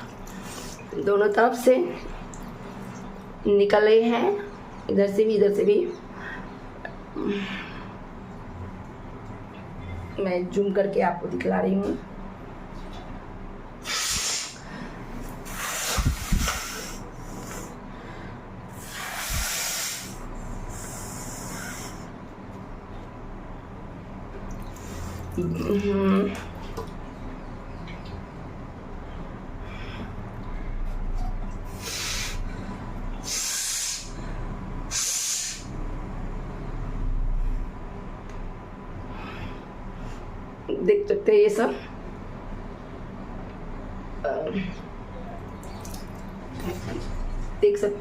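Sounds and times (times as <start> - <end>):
nose blowing: 13.8 - 14.6, 15.4 - 17.7, 18.8 - 22.1, 34.9 - 35.6
hissing breaths: 13.8 - 22.2.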